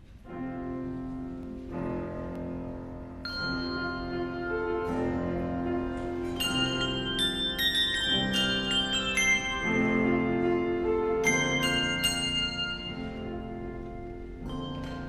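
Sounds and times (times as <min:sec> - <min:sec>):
sustained chords: 0:00.6 - 0:15.0
bell-like struck notes: 0:03.2 - 0:15.0.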